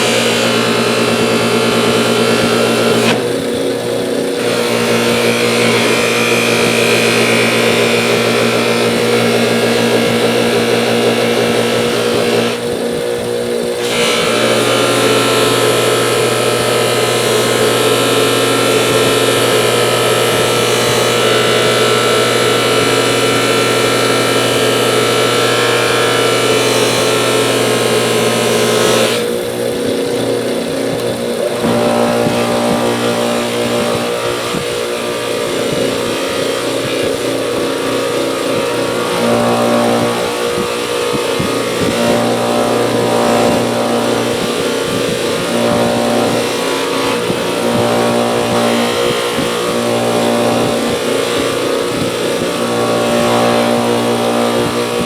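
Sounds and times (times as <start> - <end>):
bench buffer motor hum: 0.0 - 55.0.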